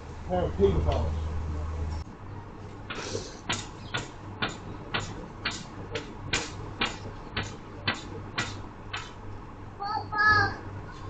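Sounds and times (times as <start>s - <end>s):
banging on a fence: 3.4s - 9.2s.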